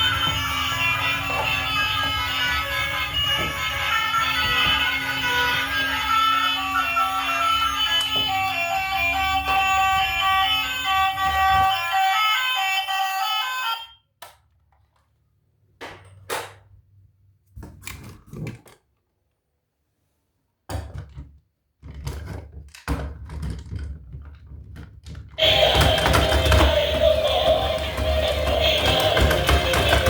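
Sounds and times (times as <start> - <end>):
toys thunking and knocking: 0.0 - 12.0, 20.7 - 30.0.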